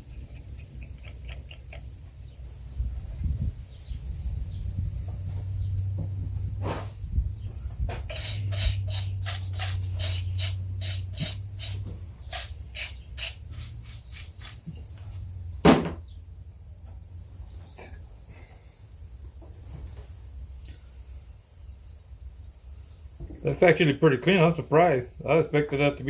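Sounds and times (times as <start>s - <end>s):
louder knock: 15.6s - 16.0s.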